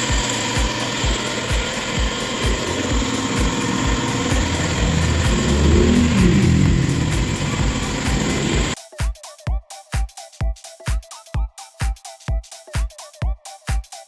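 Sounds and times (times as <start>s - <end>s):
deep wavering drone: 0.0s - 8.8s
dance music with kick drum: 0.0s - 14.0s.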